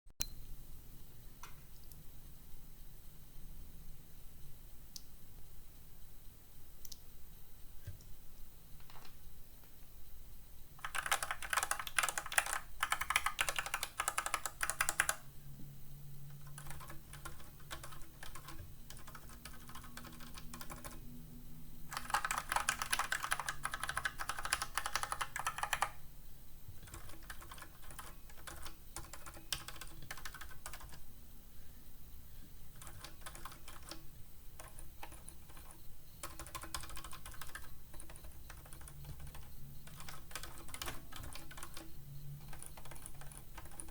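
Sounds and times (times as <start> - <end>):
typing on mechanical keyboard: 10.8 - 15.2, 16.3 - 21.0, 21.9 - 26.0, 26.8 - 31.0, 32.7 - 34.0, 34.6 - 43.9.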